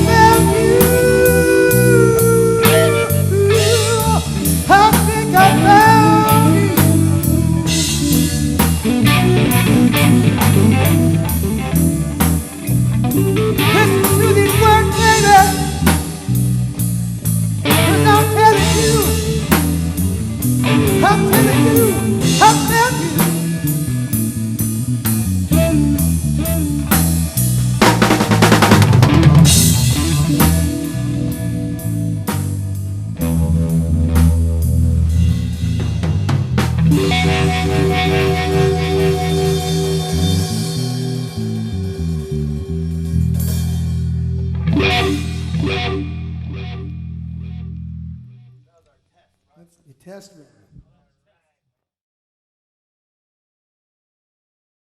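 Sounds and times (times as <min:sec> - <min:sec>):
person singing: 0:00.0 - 0:08.4, 0:13.6 - 0:16.3, 0:17.7 - 0:19.7, 0:20.7 - 0:23.7
drum kit beat: 0:00.0 - 0:46.2
bass guitar line: 0:00.0 - 0:48.6
electric guitar playing: 0:00.0 - 0:48.6
drum kit with crashing cymbals: 0:26.7 - 0:31.6.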